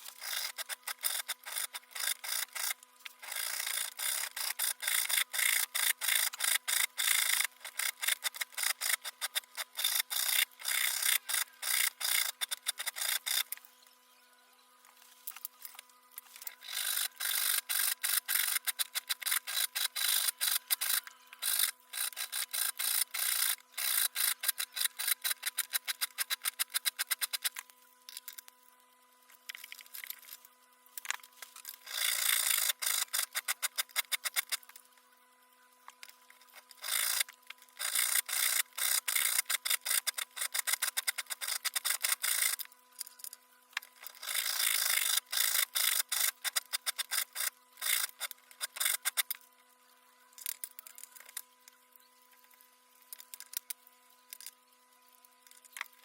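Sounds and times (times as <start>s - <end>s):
hand tool rasping: 0.0s - 13.6s, 16.2s - 27.6s, 31.4s - 34.7s, 36.4s - 42.6s
faint steady hum: 0.0s - 56.0s.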